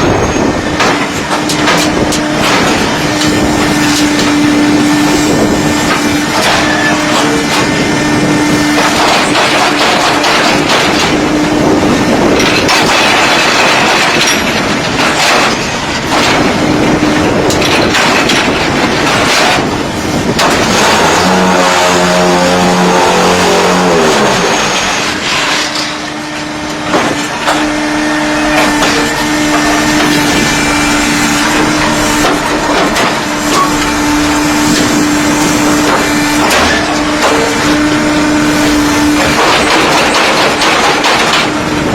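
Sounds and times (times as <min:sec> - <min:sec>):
block-making machine running: 0:00.0 - 0:41.9
motor note: 0:20.7 - 0:39.3.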